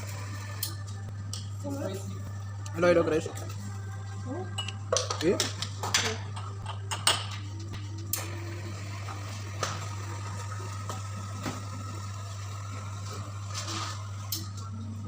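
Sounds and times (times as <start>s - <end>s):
cups and utensils clinking: 4.5s - 7.5s.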